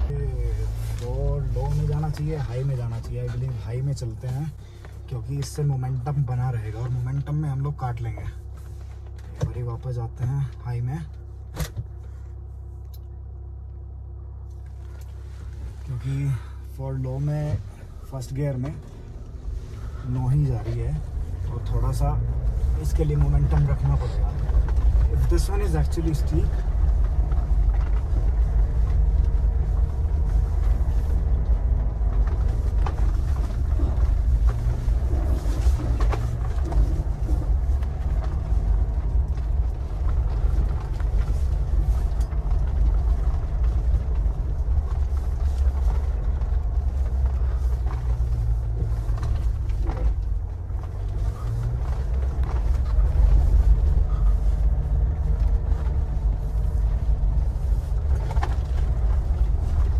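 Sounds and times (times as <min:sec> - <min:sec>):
engine droning under load: 0:00.0 - 0:59.9.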